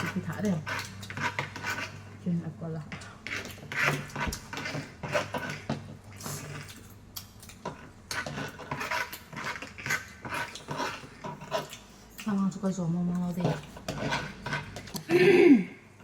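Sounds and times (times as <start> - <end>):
person chewing: 3.3 - 12.3.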